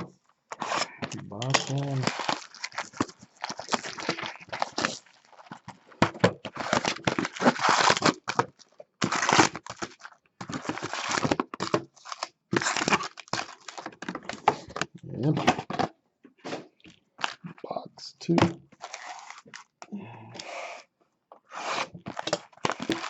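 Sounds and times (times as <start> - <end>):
plastic wrapping crinkling and tearing: 0.5 - 15.8, 16.9 - 17.6, 18.8 - 19.8, 21.8 - 23.0.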